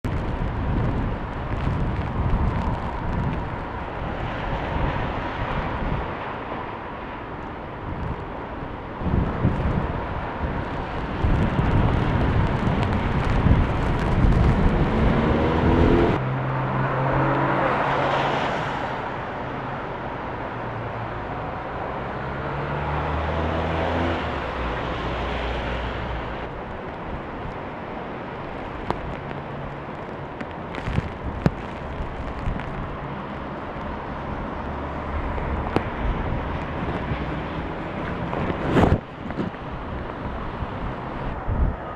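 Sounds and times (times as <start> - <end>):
storm wind gusting: 0.0 - 19.4, 23.1 - 41.9.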